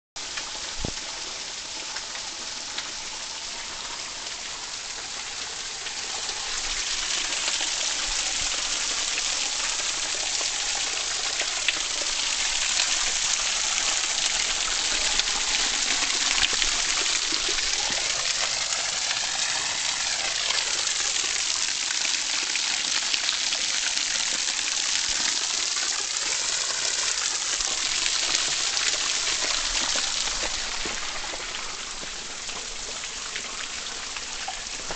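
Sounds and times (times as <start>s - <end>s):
waterfall rushing: 5.2s - 21.8s, 25.7s - 34.9s.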